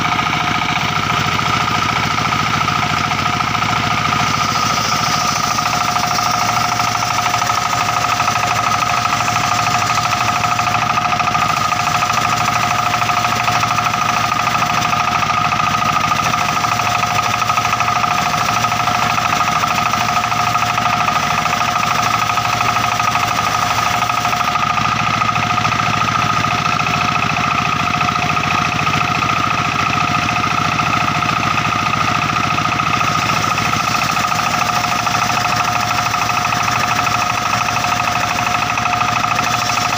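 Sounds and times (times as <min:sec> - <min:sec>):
circular saw whine: 0:03.0 - 0:14.6, 0:33.0 - 0:39.9.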